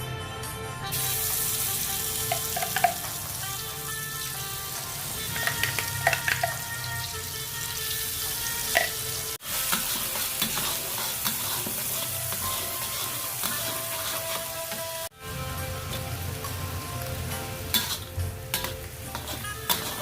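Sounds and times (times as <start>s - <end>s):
food sizzling in hot oil: 0.9s - 20.0s
utensil clinking in pan: 2.3s - 3.1s.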